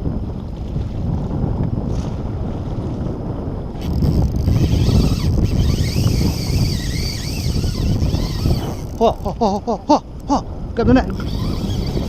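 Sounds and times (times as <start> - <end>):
wind buffeting microphone: 0.0 - 12.0
high-pitched wavering whine: 3.8 - 9.5.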